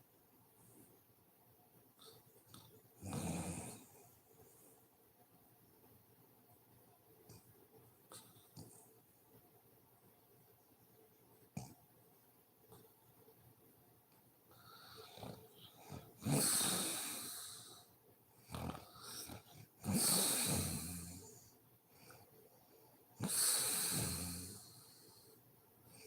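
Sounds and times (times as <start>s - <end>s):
wheezy breathing: 14.5s - 22.3s, 23.2s - 26.0s
woman snoring: 16.0s - 17.8s, 19.8s - 21.3s, 23.2s - 24.8s.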